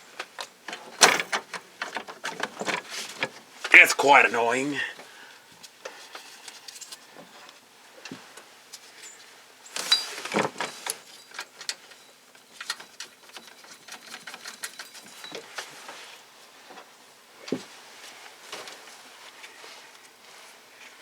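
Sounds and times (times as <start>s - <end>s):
metal parts clattering: 1.0s - 1.5s
hand tools clicking and clinking: 1.0s - 1.6s.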